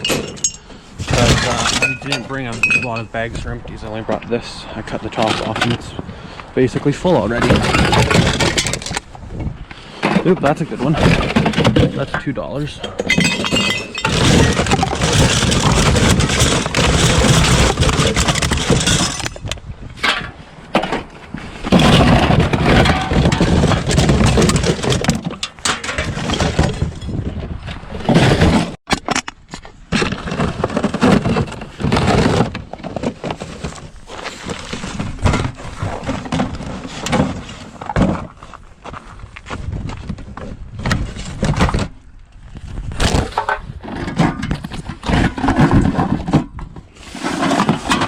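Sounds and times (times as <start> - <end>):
cans and bottles clattering: 0.0 - 3.3, 9.9 - 21.1, 21.7 - 27.2, 43.2 - 48.0.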